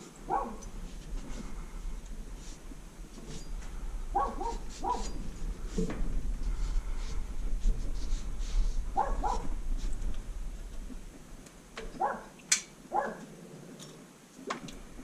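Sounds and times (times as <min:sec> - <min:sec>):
dog barking: 0:00.3 - 0:00.6, 0:04.1 - 0:05.1, 0:09.0 - 0:09.5, 0:12.0 - 0:12.3, 0:12.9 - 0:13.3.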